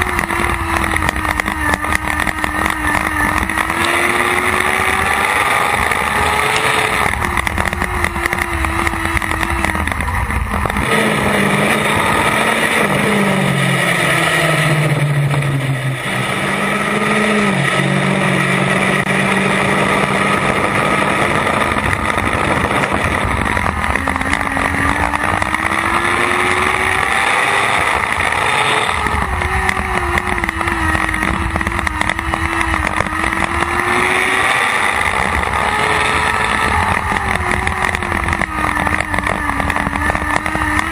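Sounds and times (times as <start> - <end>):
race car engine revving: 0.0 - 40.9
wind rush on microphone: 16.5 - 40.9.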